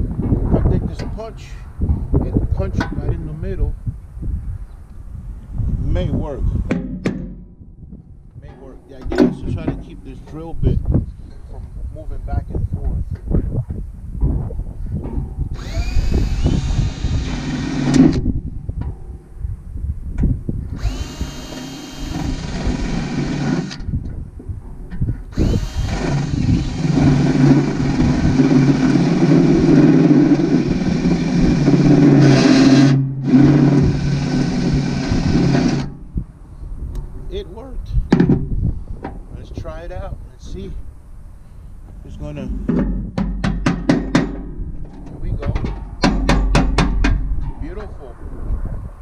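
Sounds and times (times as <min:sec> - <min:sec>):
electric drill boring into metal: 0:15.5 - 0:18.2, 0:20.8 - 0:23.9, 0:25.3 - 0:36.0.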